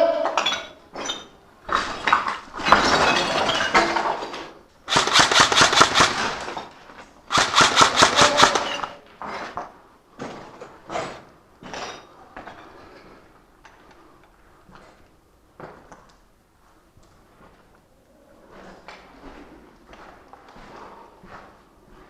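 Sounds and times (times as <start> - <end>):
full-auto airsoft gun fire: 4.9 - 6.5, 7.3 - 8.8.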